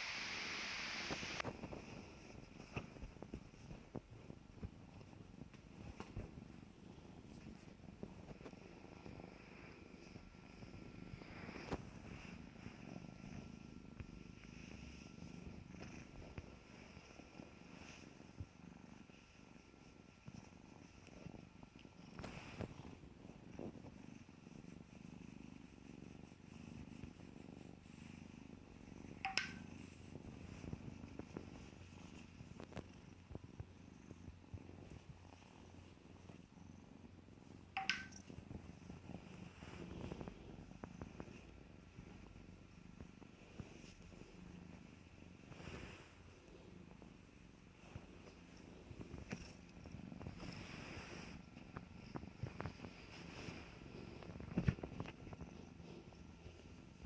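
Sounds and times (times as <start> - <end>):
kitten purring: 0.1 - 57.0
light clicks or taps: 29.2 - 29.6, 37.8 - 38.3.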